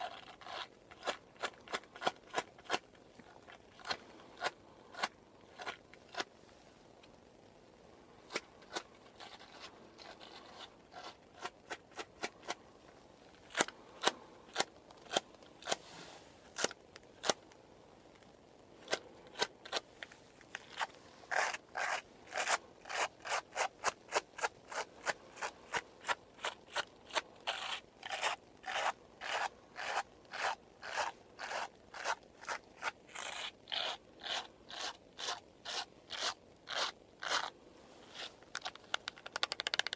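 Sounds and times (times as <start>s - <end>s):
soft rubbing: 0.0s - 17.0s, 18.0s - 26.8s, 36.7s - 39.1s.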